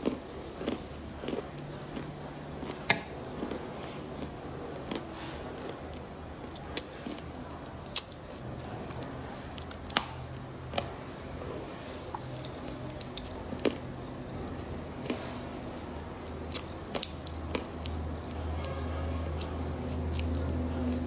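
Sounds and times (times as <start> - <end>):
chocolate being bitten and crunched: 4.2 - 11.0, 16.4 - 18.8.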